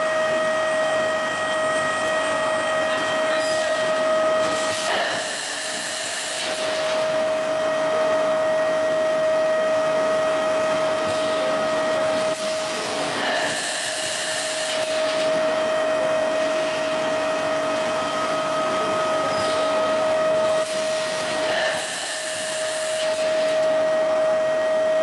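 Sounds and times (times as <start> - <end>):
machine whine: 0.0 - 25.0
mechanical hiss: 4.5 - 7.1, 12.3 - 15.3, 20.5 - 23.7.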